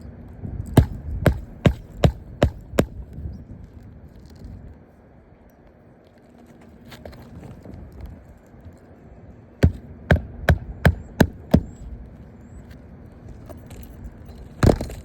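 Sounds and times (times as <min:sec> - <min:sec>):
sharp knocks: 0:00.8 - 0:03.0.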